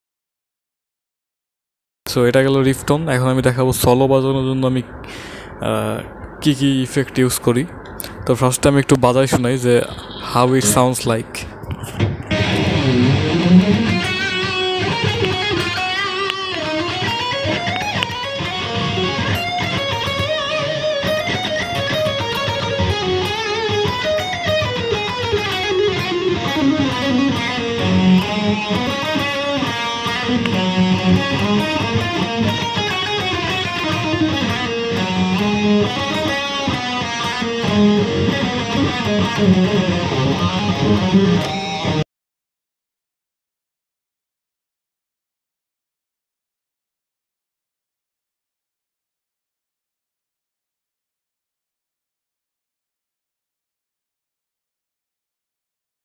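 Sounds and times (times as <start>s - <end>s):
electric guitar lead lines: 4.5s - 42.0s.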